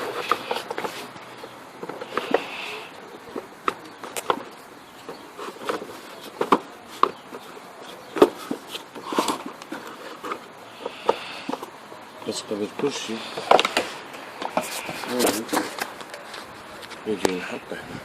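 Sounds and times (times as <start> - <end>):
pump parts clicking and knocking: 3.3 - 11.8, 12.8 - 16.2.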